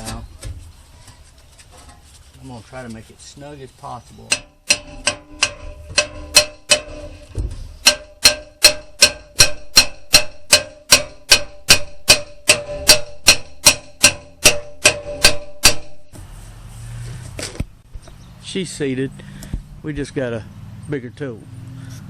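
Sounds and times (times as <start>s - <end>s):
hammer striking steel drum: 4.3s - 16.2s.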